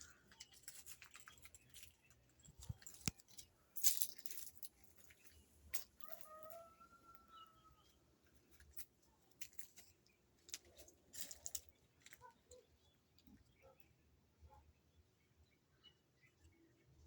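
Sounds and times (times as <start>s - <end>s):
light clicks and taps: 0.3s - 4.7s.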